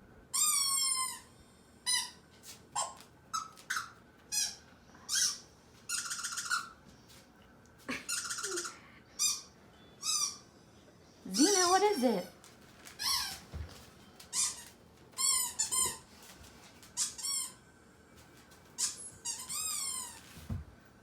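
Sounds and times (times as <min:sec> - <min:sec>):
squeaky toy squeaking: 0:00.4 - 0:01.3, 0:01.9 - 0:02.2, 0:02.8 - 0:06.8, 0:08.1 - 0:10.4, 0:13.0 - 0:13.4, 0:14.3 - 0:16.0, 0:18.8 - 0:20.2.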